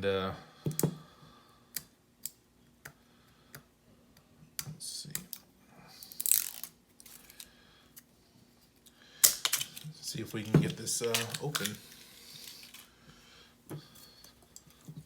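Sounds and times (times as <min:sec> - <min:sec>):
small objects clicking on desk: 0:09.2 - 0:09.9, 0:11.0 - 0:12.9.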